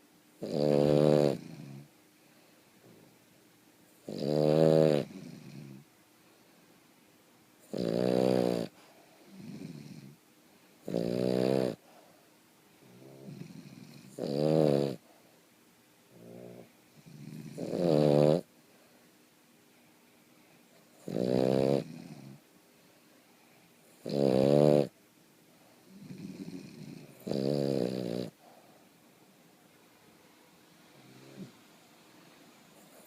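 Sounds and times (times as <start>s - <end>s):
dog snoring: 0.4s - 1.9s, 4.0s - 5.9s, 7.6s - 10.2s, 10.8s - 12.0s, 12.8s - 15.0s, 16.1s - 18.5s, 20.9s - 22.4s, 23.9s - 25.0s, 25.8s - 28.8s, 31.0s - 31.6s
dog breathing softly: 28.3s - 29.1s.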